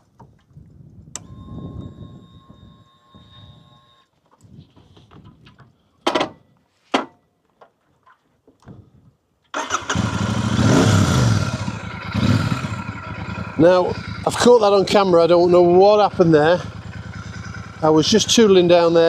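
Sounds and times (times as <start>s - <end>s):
motorcycle engine running: 9.9s - 19.0s.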